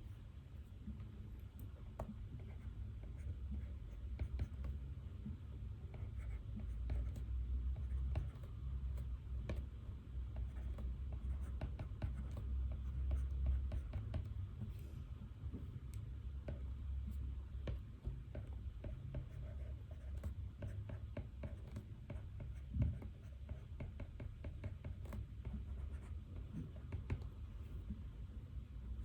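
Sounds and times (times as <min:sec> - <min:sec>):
steady low hum: 0:00.0 - 0:29.0
pen scratching on paper: 0:02.0 - 0:04.8, 0:05.9 - 0:09.6, 0:10.4 - 0:14.4, 0:17.6 - 0:27.8.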